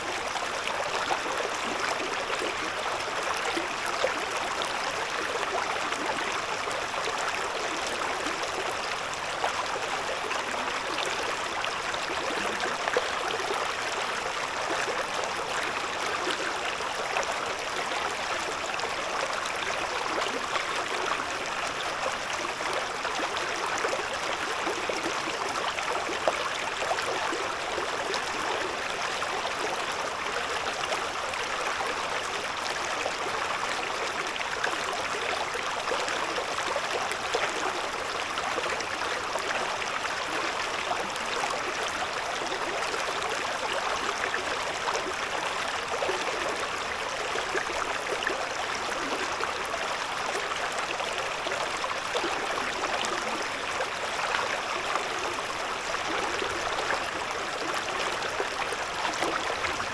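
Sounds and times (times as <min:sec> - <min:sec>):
river babbling over stones: 0:00.0 - 0:59.9.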